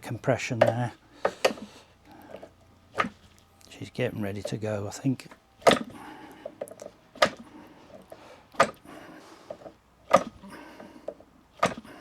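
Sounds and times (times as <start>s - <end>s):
model engine flicked over by hand: 0.6s - 1.7s, 2.3s - 3.4s, 5.3s - 8.9s, 9.5s - 12.0s.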